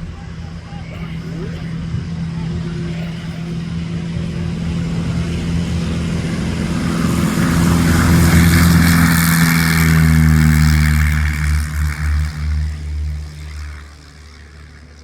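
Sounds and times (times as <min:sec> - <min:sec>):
piston aircraft engine and propeller: 0:00.0 - 0:15.0.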